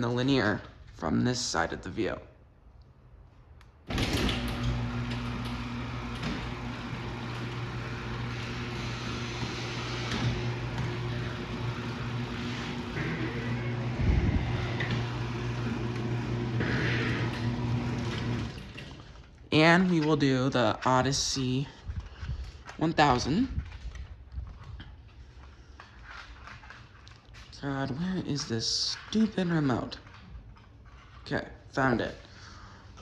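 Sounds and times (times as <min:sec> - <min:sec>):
garage door opener motor hum: 0:03.9 - 0:19.3.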